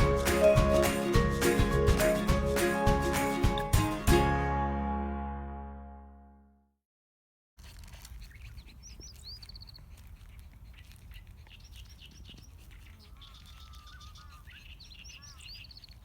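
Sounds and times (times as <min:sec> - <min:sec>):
wild birds singing and chirping: 0:08.3 - 0:16.0.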